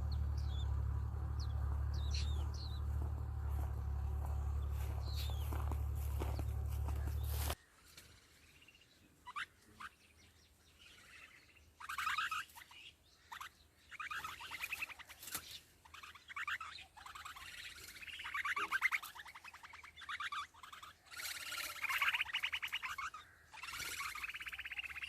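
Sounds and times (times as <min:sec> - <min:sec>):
loud steady hum: 0:00.0 - 0:07.6
nestling birds chirping: 0:00.0 - 0:25.0.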